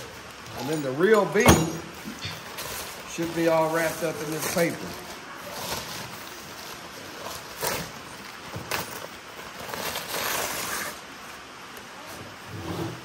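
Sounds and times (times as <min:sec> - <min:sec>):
packing paper crinkling: 0:02.5 - 0:11.2.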